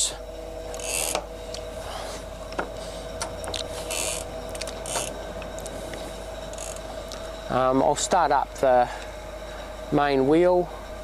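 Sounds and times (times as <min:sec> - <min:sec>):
hydraulic pump humming: 0:00.0 - 0:11.0.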